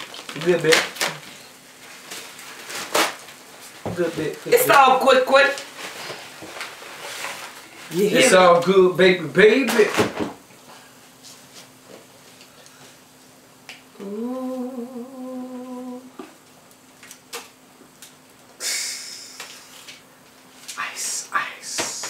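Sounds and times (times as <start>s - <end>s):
person humming: 13.9s - 16.4s.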